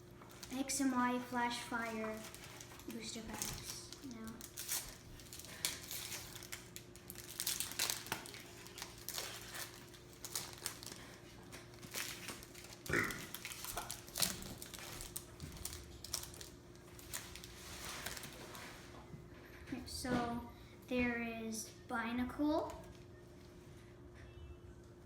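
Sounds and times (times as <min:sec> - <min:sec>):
foil wrapper tearing and crinkling: 0:01.4 - 0:18.6.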